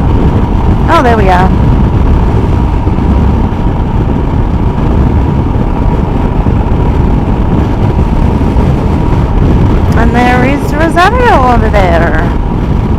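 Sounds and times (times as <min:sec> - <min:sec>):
motorcycle engine: 0:00.0 - 0:12.9
wind rush on microphone: 0:00.0 - 0:12.9.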